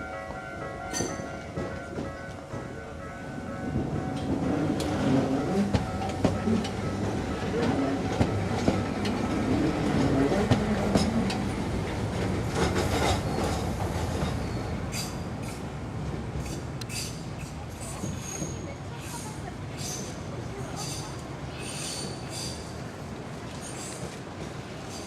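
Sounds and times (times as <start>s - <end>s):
tram running past: 0.0s - 25.0s
wheels clicking over rail joints: 3.8s - 22.8s.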